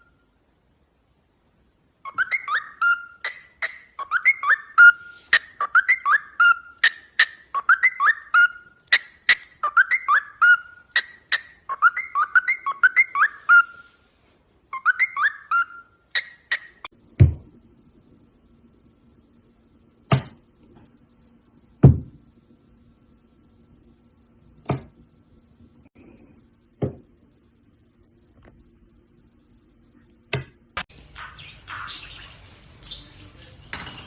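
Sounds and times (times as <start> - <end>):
bird whistling: 2.1 - 13.9, 14.7 - 16.8, 30.9 - 34.0
faint hum: 16.9 - 34.0.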